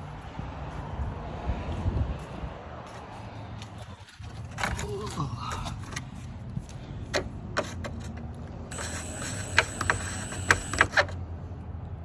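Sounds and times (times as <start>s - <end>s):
cordless drill driving screw: 8.7s - 11.2s.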